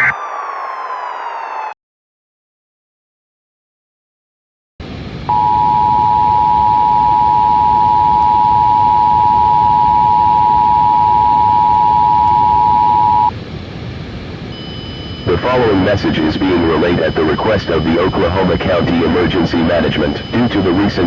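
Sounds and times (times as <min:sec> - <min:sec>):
static noise: 0:00.0 - 0:00.2, 0:04.8 - 0:21.0.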